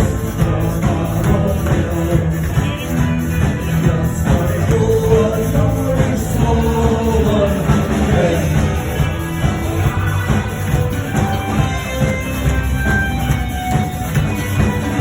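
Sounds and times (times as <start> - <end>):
person singing: 0.0 - 9.9
rock band playing: 0.0 - 15.0.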